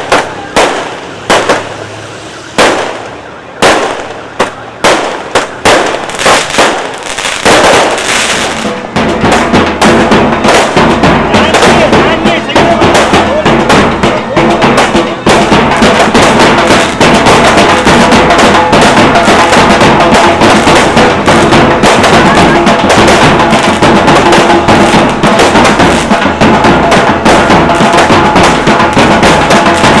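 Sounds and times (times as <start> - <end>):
loud music with drumbeat: 0.0 - 1.7, 3.6 - 30.0.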